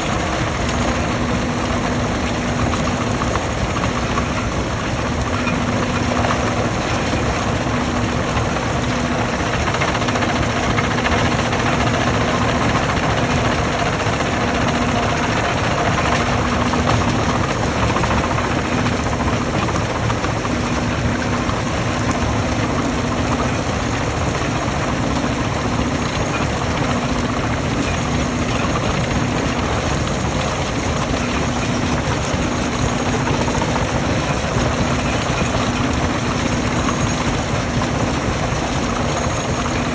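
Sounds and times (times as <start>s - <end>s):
stone crusher machinery: 0.0s - 39.9s.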